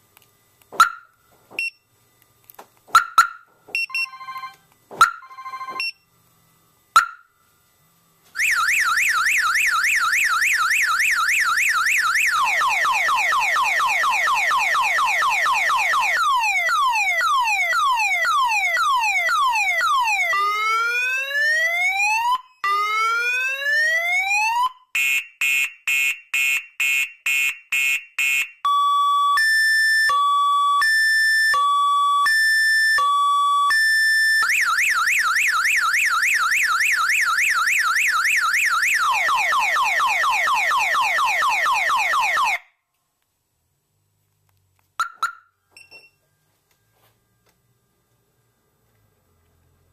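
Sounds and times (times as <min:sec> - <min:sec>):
car alarm siren: 0:00.8 - 0:01.7, 0:03.0 - 0:05.9, 0:07.0 - 0:07.3, 0:08.4 - 0:42.7, 0:45.0 - 0:45.6.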